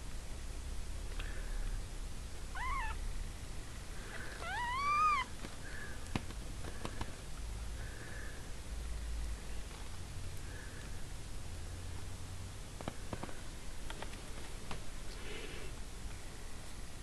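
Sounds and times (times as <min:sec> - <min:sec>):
kittens mewing: 0:02.5 - 0:03.0, 0:04.1 - 0:05.3.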